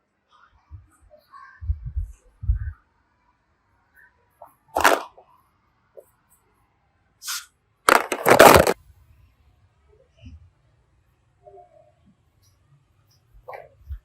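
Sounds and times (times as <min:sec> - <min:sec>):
sharp cracking and crackling: 0:07.9 - 0:08.8.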